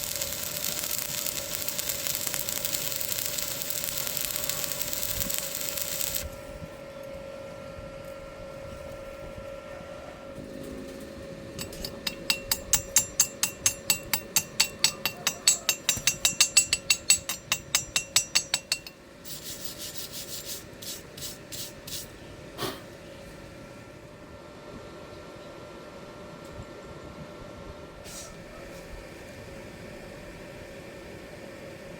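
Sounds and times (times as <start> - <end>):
hand tool scraping metal: 11.6 - 22.1.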